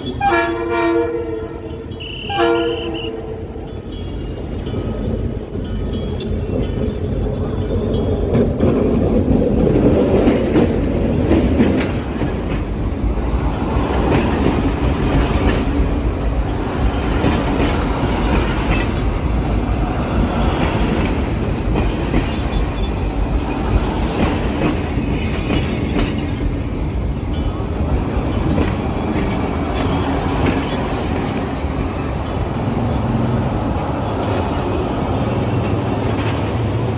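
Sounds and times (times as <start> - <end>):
train rumble: 0.0 - 36.9
train wheels clattering on rails: 3.0 - 36.9.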